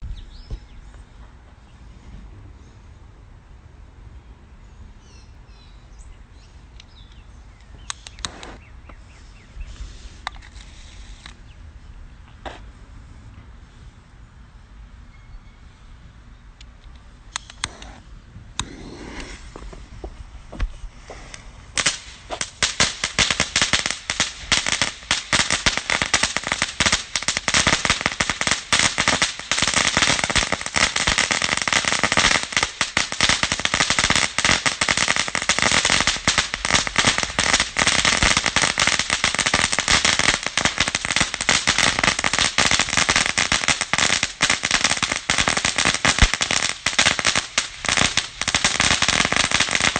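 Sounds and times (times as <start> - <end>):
fireworks cracking: 8.0 - 8.7, 18.6 - 49.9.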